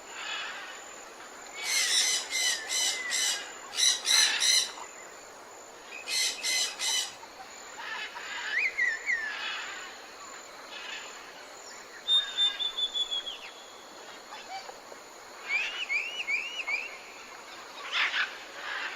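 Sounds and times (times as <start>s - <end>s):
thin high whistle: 12.1s - 13.6s.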